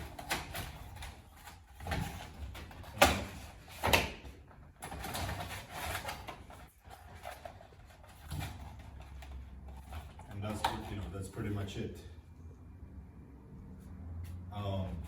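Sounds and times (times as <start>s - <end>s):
rustling and scraping: 0.0s - 11.7s.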